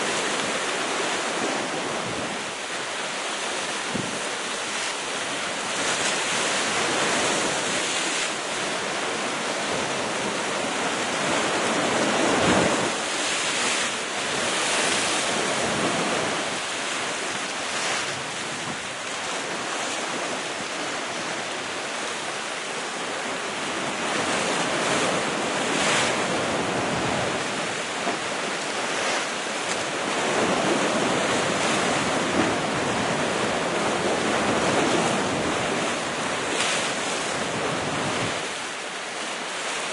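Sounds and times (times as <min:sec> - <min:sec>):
waves breaking on rocks: 0:00.0 - 0:39.9.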